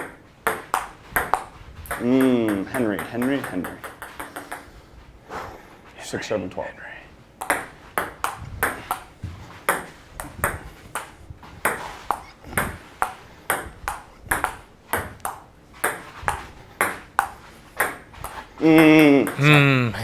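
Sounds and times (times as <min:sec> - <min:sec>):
table tennis ball clicking: 0:00.0 - 0:04.7, 0:07.4 - 0:09.1.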